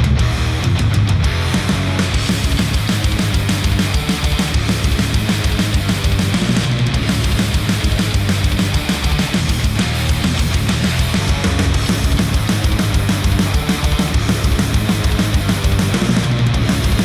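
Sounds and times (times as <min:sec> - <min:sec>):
heavy rock music: 0:00.0 - 0:17.0.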